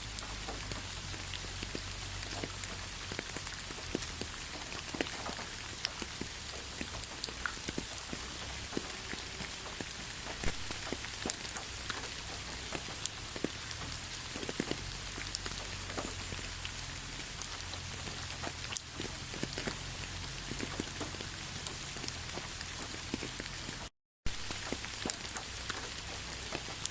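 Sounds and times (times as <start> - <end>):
steady rain falling: 0.0 - 26.9.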